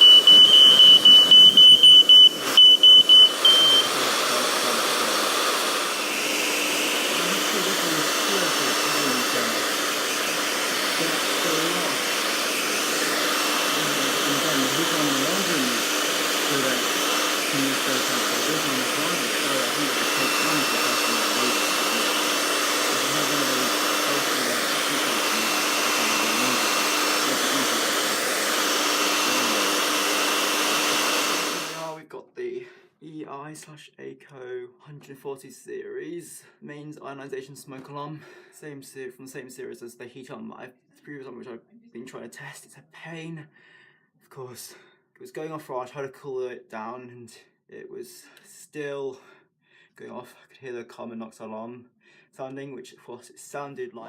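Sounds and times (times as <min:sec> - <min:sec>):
alarm pulsing high beep: 0:00.0 - 0:04.0
hair dryer running: 0:00.0 - 0:32.0.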